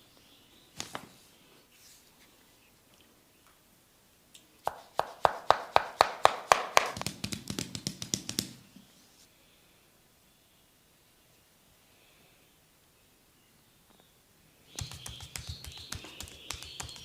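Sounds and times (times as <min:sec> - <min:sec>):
drumsticks tapping on a body: 0:04.7 - 0:08.6, 0:14.7 - 0:17.0.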